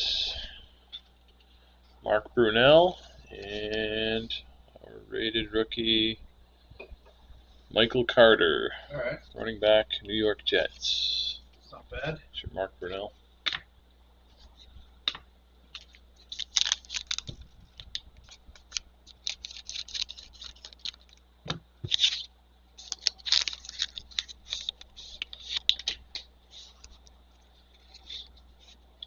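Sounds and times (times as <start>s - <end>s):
card pack wrapper crackling: 15.7s - 21.2s, 21.8s - 27.0s.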